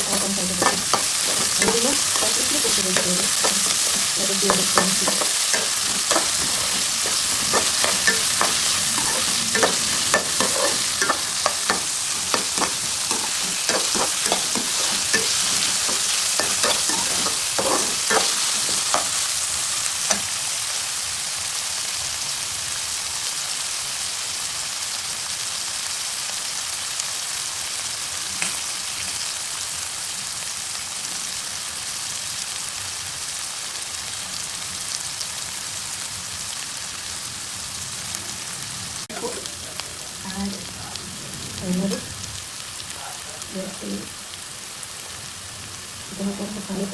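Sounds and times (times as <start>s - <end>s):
vegetables sizzling in hot oil: 0.0s - 46.9s
utensil scraping against pan: 0.1s - 19.3s.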